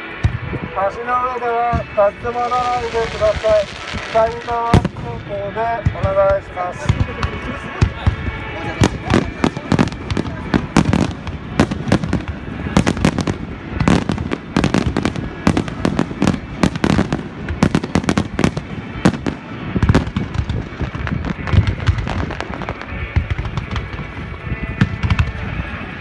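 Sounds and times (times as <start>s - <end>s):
fireworks cracks and bangs: 0.0s - 25.9s.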